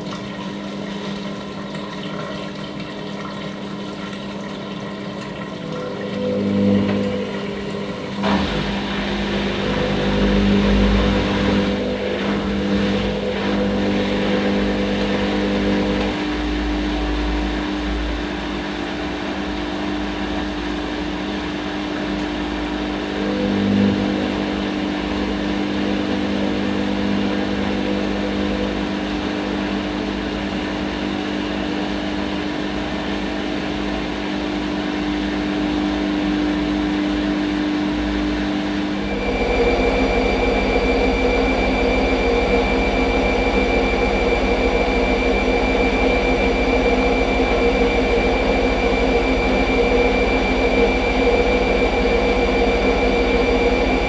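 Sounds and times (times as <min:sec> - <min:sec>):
washing machine motor hum: 0:00.0 - 0:54.0.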